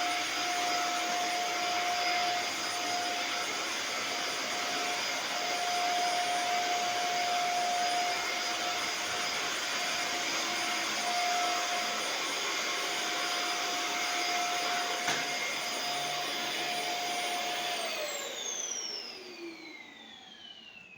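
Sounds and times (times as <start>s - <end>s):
vacuum cleaner running: 0.0s - 20.9s
motor whine winding down: 16.6s - 20.9s.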